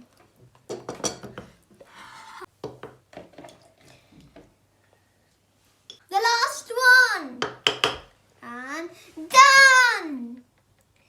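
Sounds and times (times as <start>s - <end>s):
utensils knocking on baking dish: 7.4s - 8.1s.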